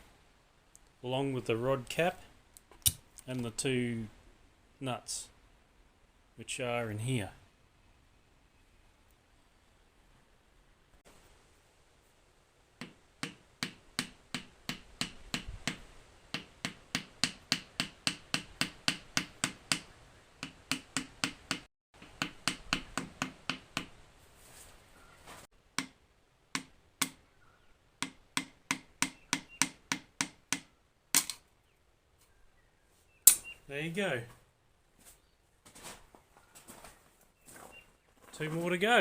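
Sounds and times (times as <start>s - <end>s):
piston tapped with sharp knocks: 12.8s - 24.0s, 25.8s - 27.2s, 28.0s - 31.4s, 33.3s - 33.6s.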